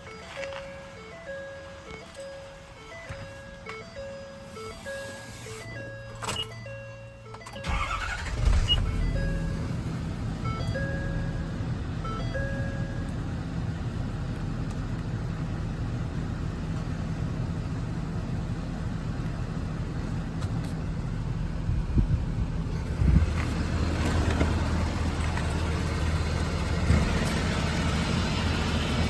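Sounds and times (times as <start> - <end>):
electronic warning chime: 0.0 - 9.8
diesel engine cranking and idling: 0.0 - 29.0.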